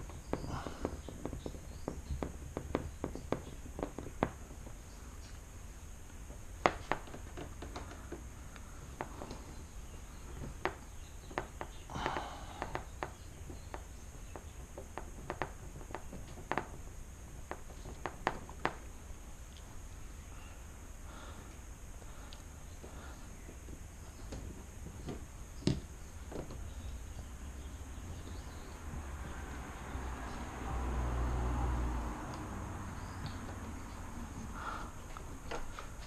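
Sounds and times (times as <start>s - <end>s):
steady low hum: 0.0s - 36.0s
clicks and taps on car trim: 10.4s - 18.8s.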